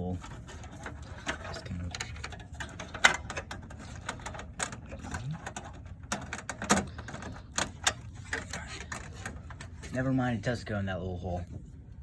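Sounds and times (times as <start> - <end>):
cable connector clicking and rattling: 0.2 - 9.8.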